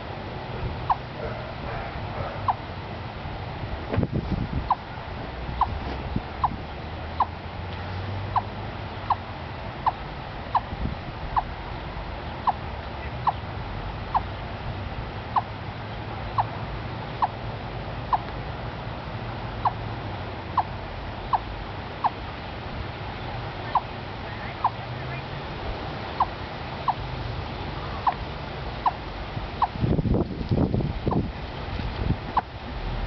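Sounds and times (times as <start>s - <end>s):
chipmunk chuck calls: 0.8s - 2.7s, 4.7s - 5.0s, 5.6s - 5.8s, 6.4s - 6.6s, 8.3s - 10.7s, 12.3s - 13.5s, 14.1s - 14.4s, 15.3s - 15.6s, 16.2s - 16.6s, 17.2s - 17.4s, 18.1s - 18.3s, 19.6s - 19.8s, 20.5s - 22.2s, 23.6s - 25.3s, 28.8s - 29.0s, 29.6s - 29.8s, 31.1s - 31.3s.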